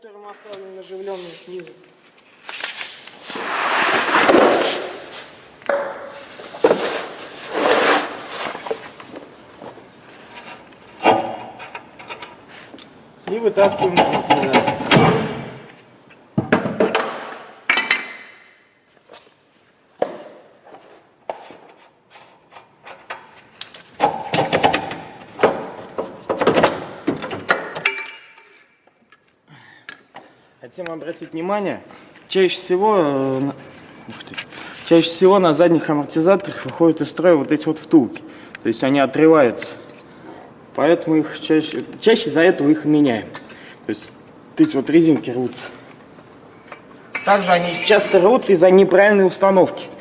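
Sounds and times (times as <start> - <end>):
wrench rasping and scraping: 47.2 - 48.3.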